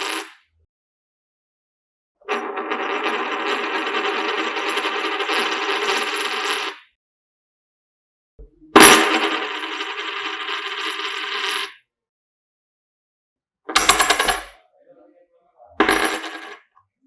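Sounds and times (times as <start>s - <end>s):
metal coins dropping and ringing: 8.8s - 11.7s, 13.7s - 14.5s, 15.8s - 16.6s.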